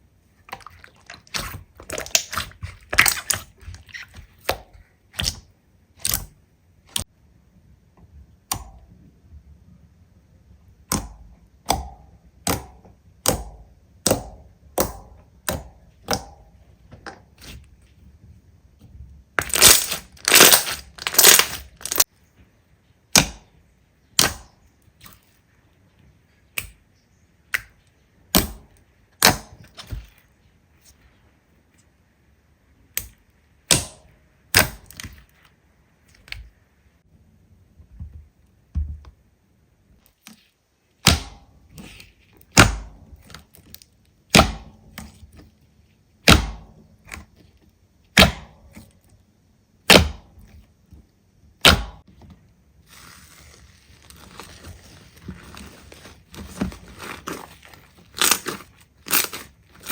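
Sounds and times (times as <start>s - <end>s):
slime popping and crackling: 0.5s - 5.4s, 19.4s - 22.1s, 52.8s - 59.9s.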